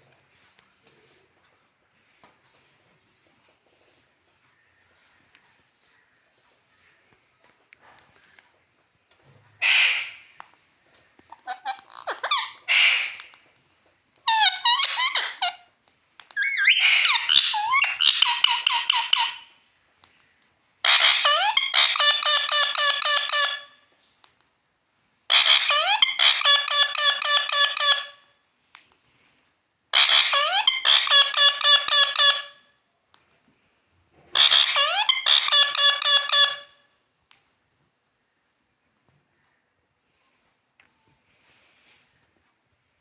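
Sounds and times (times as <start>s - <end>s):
parrot imitating a bell: 16.4s - 19.4s, 30.0s - 32.5s, 34.4s - 36.7s.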